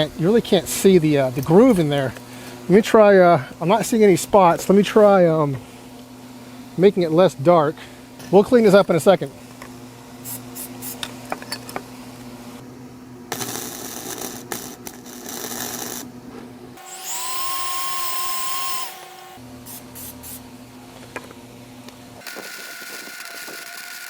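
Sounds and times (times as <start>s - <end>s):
electric grinder grinding steel: 16.8s - 19.4s, 22.2s - 24.0s
grinder motor whine: 16.8s - 19.4s, 22.2s - 24.0s.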